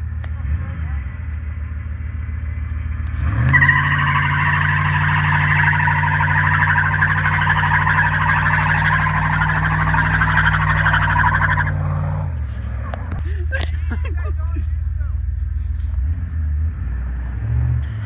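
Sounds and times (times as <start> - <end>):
engine revving: 2.9 - 12.9, 15.9 - 18.0.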